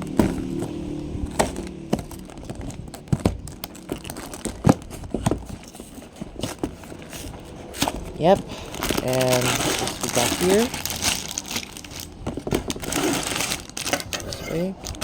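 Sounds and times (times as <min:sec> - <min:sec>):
cardboard box clicks and scrapes: 0:00.0 - 0:08.2.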